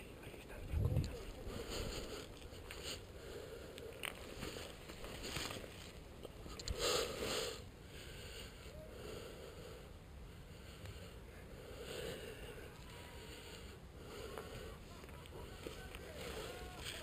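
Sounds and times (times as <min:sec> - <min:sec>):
rustle: 0:00.0 - 0:07.6, 0:15.0 - 0:17.0
close breathing and sniffing: 0:01.2 - 0:17.0.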